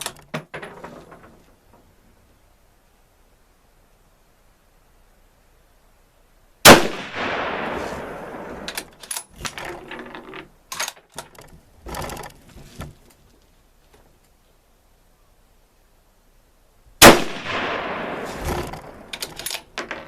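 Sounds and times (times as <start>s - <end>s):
rifle shot with echo: 6.6s - 8.7s, 17.0s - 19.0s.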